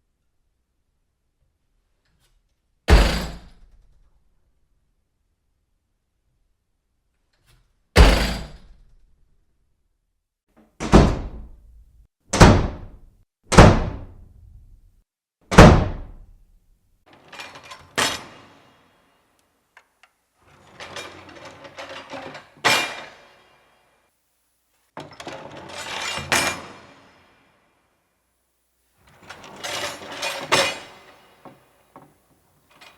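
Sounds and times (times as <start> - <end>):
door slamming: 2.9 - 3.5, 8.0 - 8.7, 10.8 - 14.3, 15.5 - 16.4
door shutting thud: 10.8 - 11.7, 12.3 - 14.3, 15.5 - 16.3.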